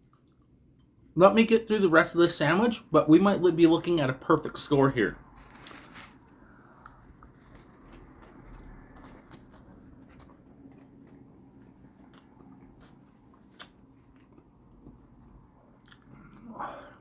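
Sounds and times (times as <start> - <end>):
person chewing food: 0.0 - 1.0, 5.4 - 17.0.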